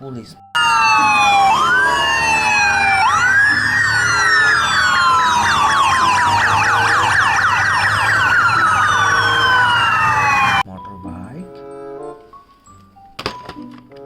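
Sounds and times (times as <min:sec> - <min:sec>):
electronic police siren: 0:00.6 - 0:10.6.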